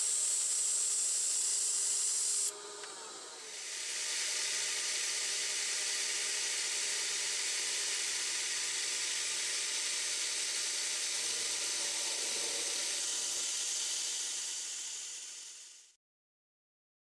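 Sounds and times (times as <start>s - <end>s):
steady motor tones: 0.0s - 15.9s
lathe spindle and cutting hiss: 0.0s - 16.0s.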